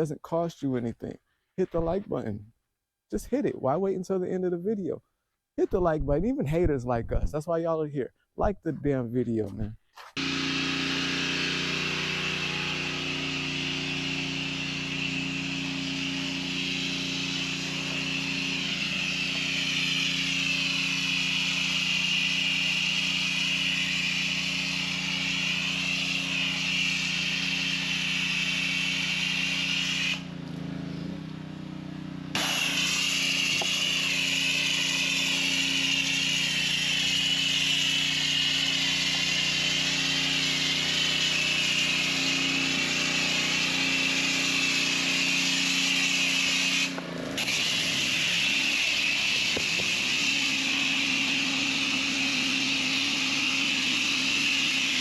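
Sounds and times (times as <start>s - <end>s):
pressure washer motor: 10.0s - 55.0s
water jet hissing: 10.2s - 30.3s, 32.4s - 55.0s.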